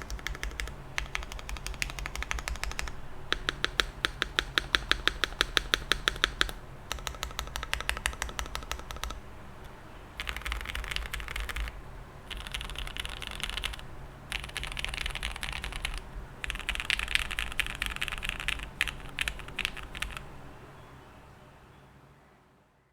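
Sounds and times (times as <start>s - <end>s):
mechanical keyboard typing: 0.0s - 20.3s.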